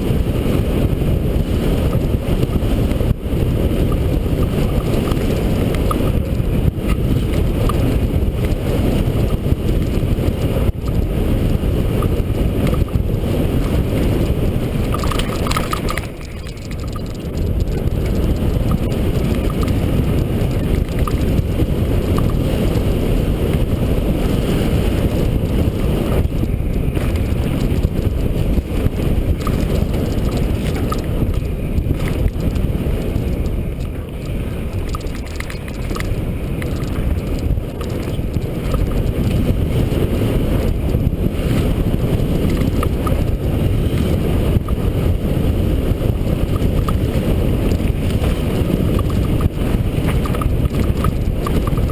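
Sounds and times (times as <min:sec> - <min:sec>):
bike tyre noise: 0:00.0 - 0:51.9
wind rushing over microphone: 0:00.0 - 0:51.9
bike clicks and knocks: 0:14.8 - 0:21.4, 0:29.3 - 0:39.5, 0:46.5 - 0:51.9.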